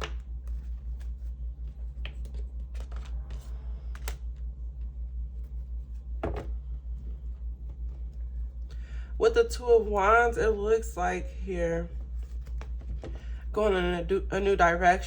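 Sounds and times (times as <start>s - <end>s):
cards clicking and rustling: 0.0s - 4.4s, 12.2s - 13.2s
steady low hum: 0.0s - 15.0s.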